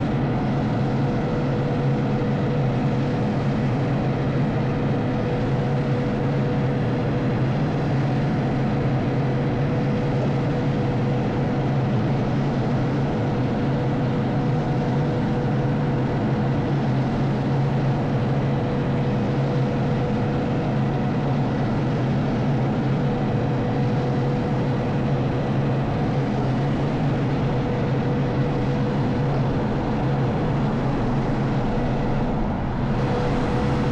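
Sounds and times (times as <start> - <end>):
diesel engine running: 27.2 - 33.9.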